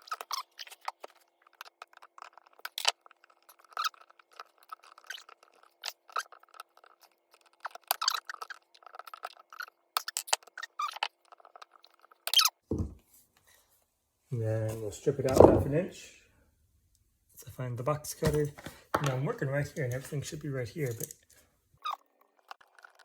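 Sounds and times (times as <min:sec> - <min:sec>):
hand tools clicking and rattling: 0:20.8 - 0:21.2.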